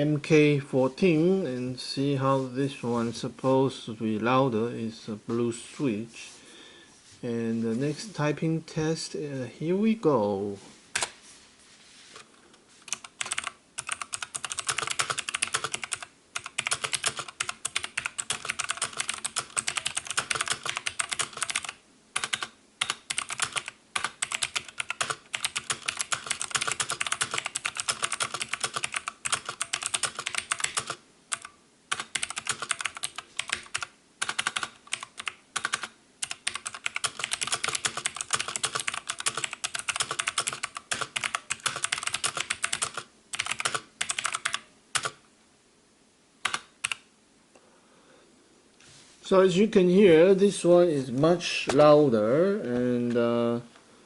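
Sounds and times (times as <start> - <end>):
fast typing on mechanical keyboard: 12.9 - 45.2, 46.4 - 47.0.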